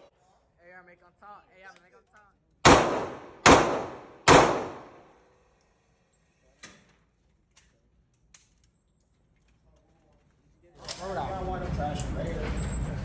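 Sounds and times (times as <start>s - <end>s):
gunshot echoing: 2.7s - 5.1s.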